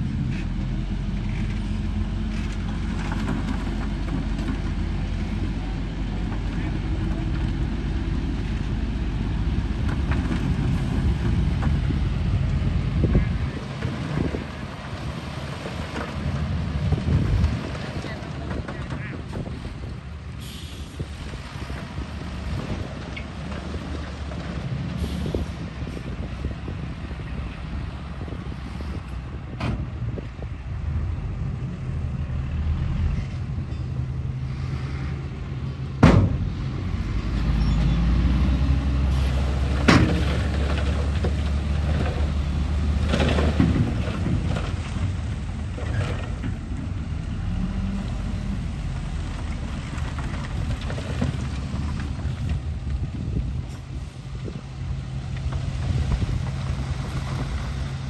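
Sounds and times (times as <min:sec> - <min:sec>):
sharp knocks: 0:36.0 - 0:36.5.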